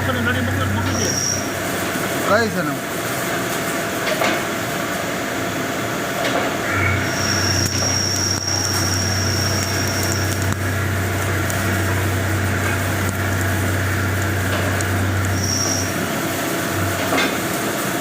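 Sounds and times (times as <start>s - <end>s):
high steady whine: 0.0s - 3.4s, 5.0s - 18.0s
drilling machine motor hum: 6.6s - 17.2s.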